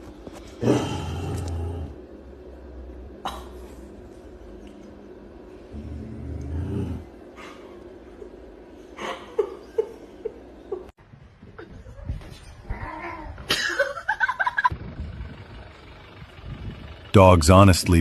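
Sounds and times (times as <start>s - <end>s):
cat meowing and yowling: 12.7s - 13.4s.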